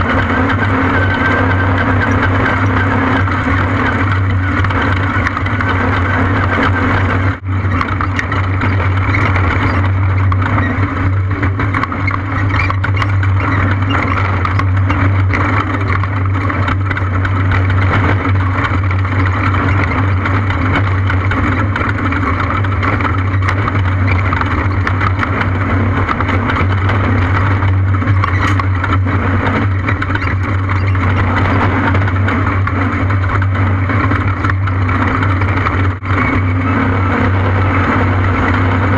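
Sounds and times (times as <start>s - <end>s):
engine running under load: 0.0s - 38.9s
rushing noise: 13.2s - 38.9s.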